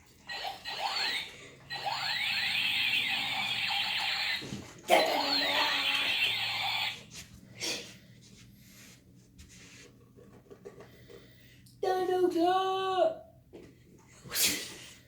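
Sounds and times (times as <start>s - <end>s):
child making creature noise: 4.9s - 6.3s.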